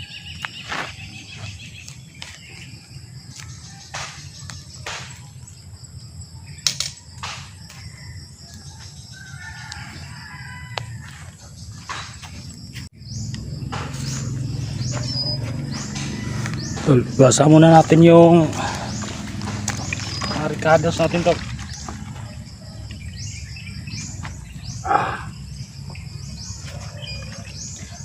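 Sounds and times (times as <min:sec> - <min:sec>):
bird chirps: 0:00.0 - 0:10.7, 0:11.4 - 0:28.0
steady low hum: 0:10.9 - 0:28.0.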